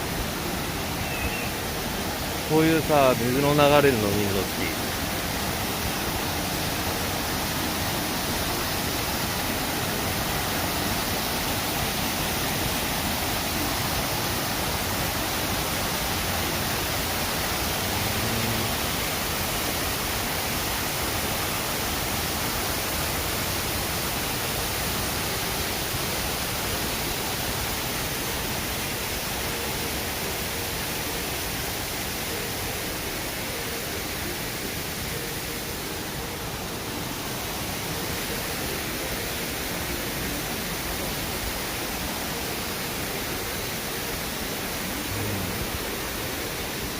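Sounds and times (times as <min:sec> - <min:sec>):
waterfall and stream rushing: 0:00.0 - 0:46.9.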